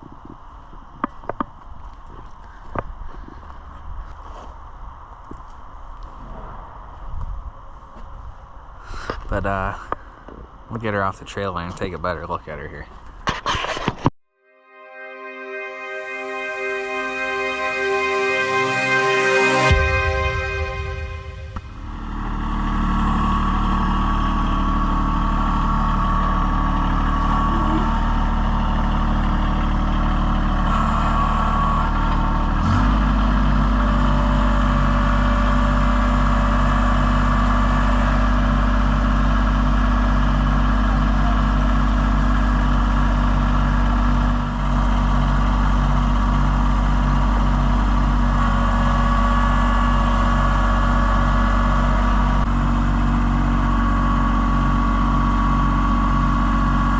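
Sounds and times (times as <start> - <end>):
vehicle engine running: 21.5 - 56.9.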